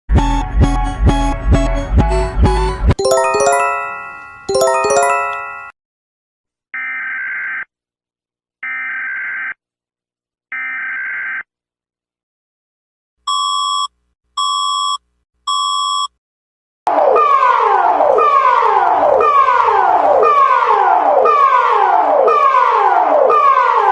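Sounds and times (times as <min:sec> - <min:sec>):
chime: 0:03.0 - 0:05.7.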